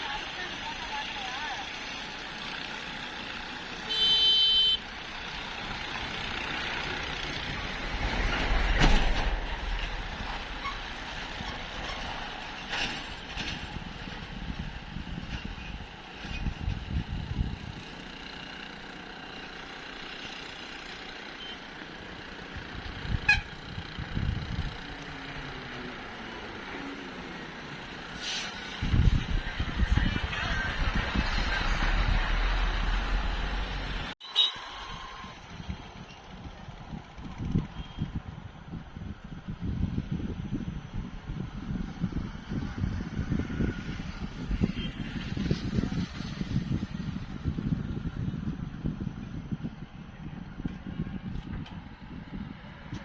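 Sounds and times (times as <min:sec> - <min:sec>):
road traffic: 0:00.0 - 0:53.0
vehicle horn: 0:03.8 - 0:04.8, 0:23.1 - 0:23.6, 0:34.2 - 0:35.3
vehicle passing close: 0:24.1 - 0:36.1.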